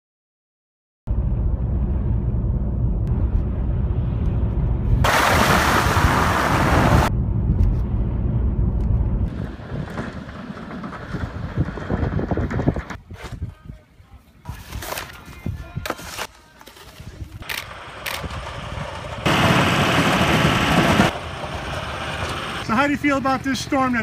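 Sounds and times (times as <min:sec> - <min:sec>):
snowblower engine running: 0:18.0 - 0:22.8.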